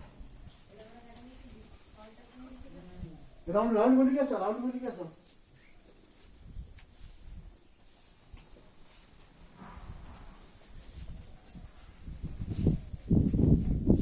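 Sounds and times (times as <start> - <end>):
high-pitched insect chirring: 1.9 - 7.1
faint low rumbles: 8.3 - 14.0.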